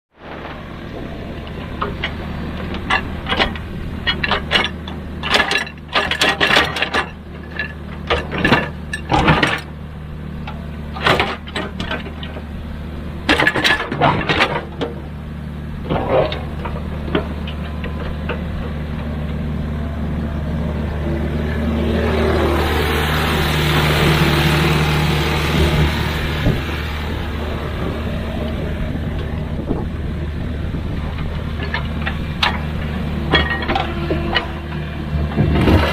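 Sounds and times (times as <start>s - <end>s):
excavator diesel engine running: 0.1s - 35.9s
sharp knocks and clanks: 1.4s - 9.7s.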